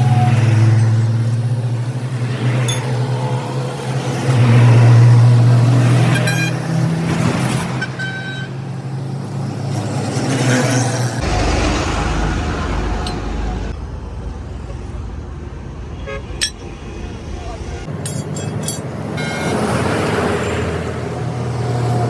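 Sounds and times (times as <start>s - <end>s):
engine humming steadily: 11.2s - 22.0s
light clinks: 17.9s - 19.0s.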